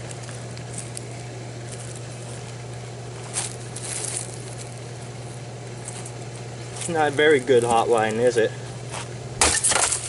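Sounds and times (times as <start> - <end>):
plastic crackle: 0.0 - 7.9
steady low hum: 0.0 - 10.0.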